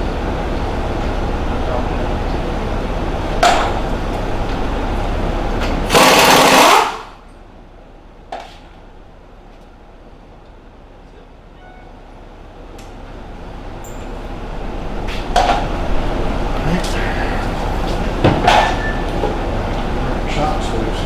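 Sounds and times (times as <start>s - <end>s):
pneumatic impact wrench hammering: 5.8s - 7.2s.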